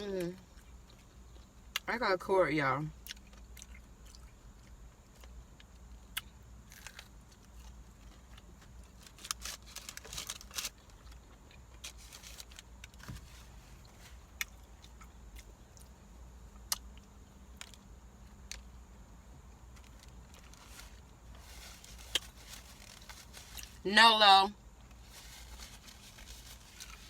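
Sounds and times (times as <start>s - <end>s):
steady low hum: 0.0s - 27.0s
chewing with mouth clicks: 3.0s - 8.9s
paper wrapper crinkling: 8.9s - 11.2s, 11.8s - 13.6s, 19.8s - 23.8s, 24.9s - 27.0s.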